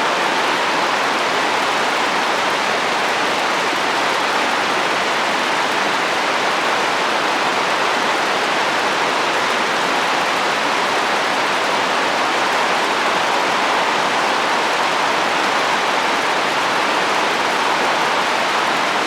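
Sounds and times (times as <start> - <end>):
heavy rain on a roof: 0.0 - 19.0.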